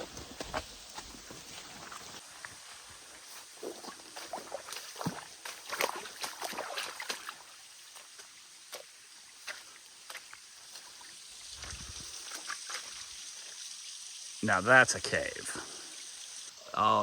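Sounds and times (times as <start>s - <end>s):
footsteps on rough ground: 0.0s - 7.2s, 11.6s - 13.0s.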